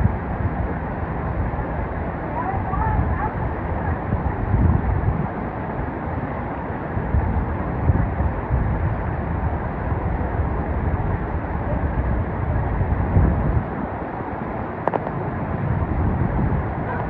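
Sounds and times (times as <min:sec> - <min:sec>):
sharp click: 0:14.9 - 0:15.2.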